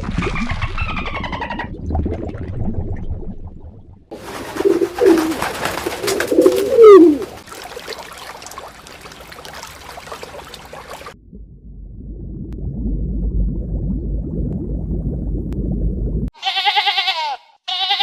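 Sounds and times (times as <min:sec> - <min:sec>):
bird low calls gliding in pitch: 0:06.4 - 0:07.3.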